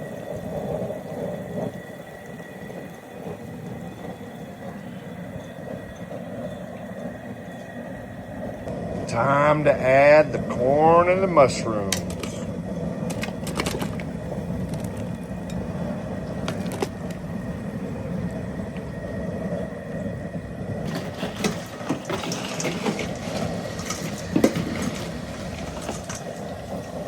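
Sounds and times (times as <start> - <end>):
boil pot burner rumbling: 0.0 - 27.0
knocks clicks and rustling: 20.9 - 26.4.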